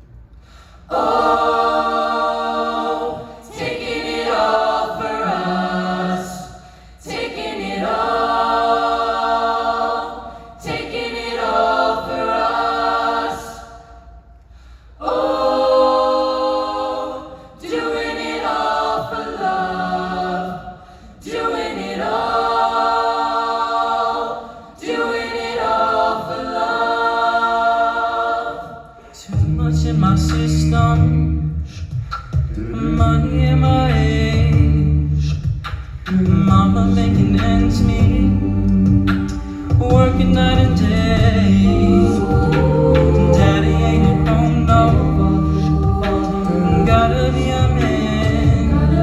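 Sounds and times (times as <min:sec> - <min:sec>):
a cappella group singing chords: 0:00.0 - 0:49.0
singers breathing: 0:00.2 - 0:00.9, 0:06.5 - 0:07.1, 0:10.2 - 0:10.6, 0:13.8 - 0:15.0, 0:20.7 - 0:21.2.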